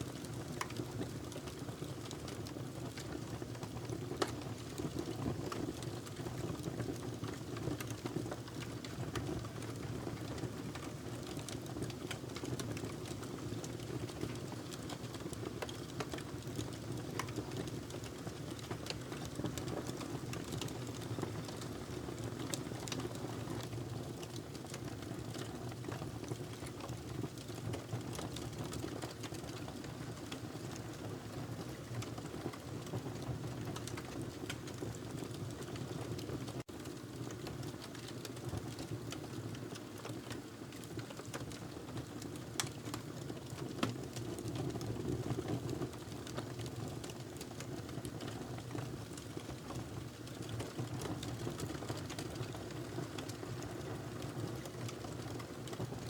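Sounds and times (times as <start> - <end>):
wood fire crackling: 9.8 - 30.8, 33.6 - 56.0.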